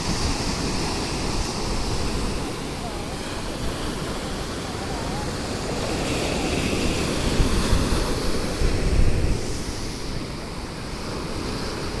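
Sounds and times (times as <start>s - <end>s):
ocean waves breaking: 0.0s - 12.0s
wind buffeting microphone: 6.0s - 10.6s.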